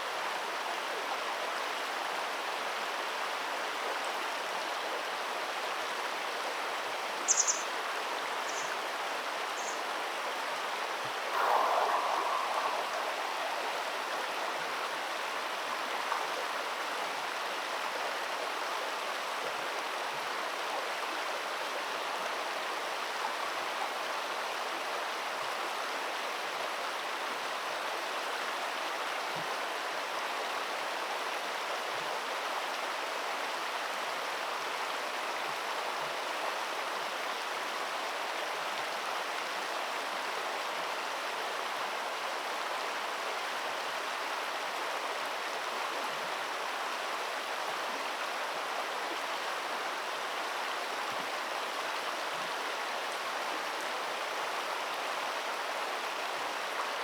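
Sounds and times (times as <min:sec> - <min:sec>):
stream water rushing: 0:06.8 - 0:19.6.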